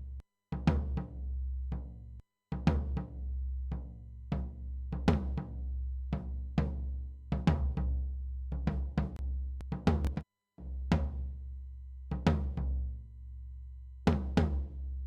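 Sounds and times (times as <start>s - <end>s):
low bass: 8.0s - 10.2s.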